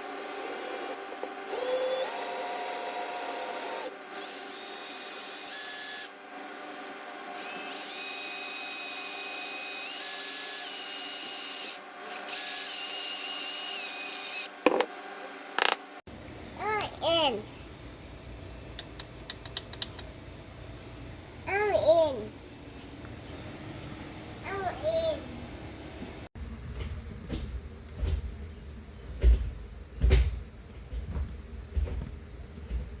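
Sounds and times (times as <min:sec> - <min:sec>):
sharp clicks: 0:18.8 - 0:20.1.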